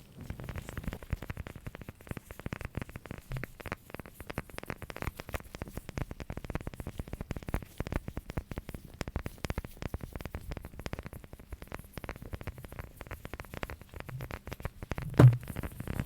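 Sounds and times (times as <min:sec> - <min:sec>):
rapid tapping on hard object: 0:09.0 - 0:15.7.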